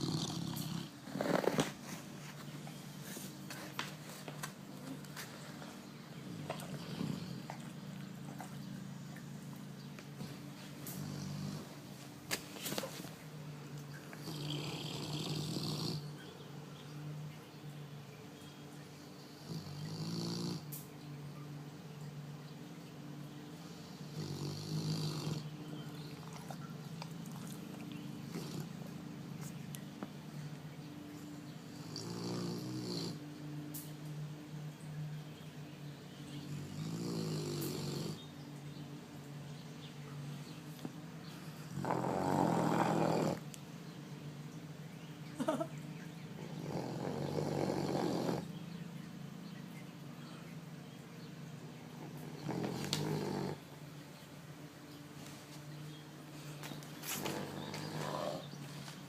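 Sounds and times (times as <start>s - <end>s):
dog snoring: 0.0s - 1.8s, 6.2s - 9.6s, 10.2s - 11.8s, 14.1s - 16.1s, 19.2s - 20.8s, 23.6s - 26.6s, 28.2s - 29.0s, 31.3s - 33.2s, 36.4s - 38.3s, 41.4s - 43.5s, 46.4s - 48.6s, 51.9s - 53.8s, 56.6s - 58.6s.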